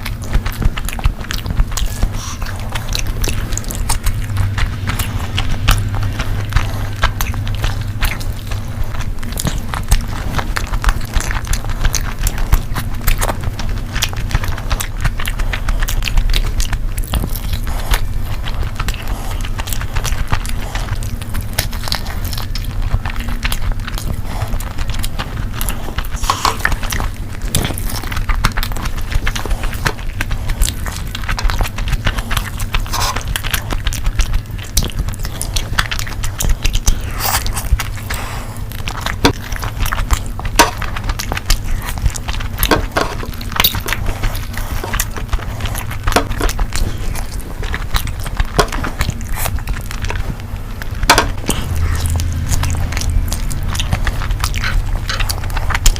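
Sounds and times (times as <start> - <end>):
person chewing food: 0.0 - 55.9
steady low hum: 0.0 - 55.9
wet mouth clicks and smacks: 0.0 - 55.9.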